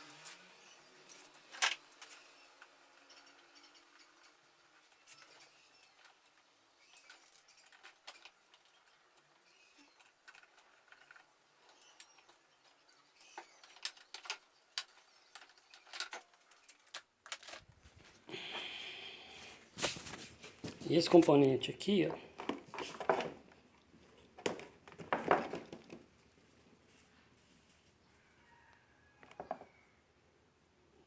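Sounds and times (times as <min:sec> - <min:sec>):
tools and fan parts clicking: 0:06.9 - 0:17.6
rustle: 0:25.0 - 0:29.8.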